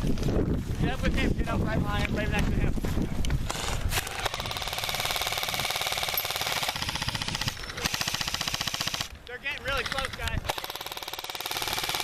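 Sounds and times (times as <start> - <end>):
airsoft gun firing full-auto: 3.6 - 9.2, 10.4 - 12.0.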